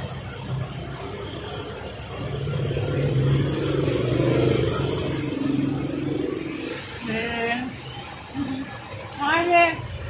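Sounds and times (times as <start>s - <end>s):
vehicle engine passing: 0.0s - 10.0s.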